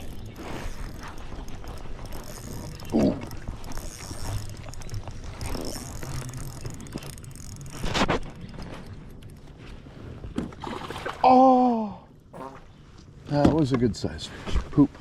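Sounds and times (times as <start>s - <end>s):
fishing reel drag clicking: 0.0s - 8.1s.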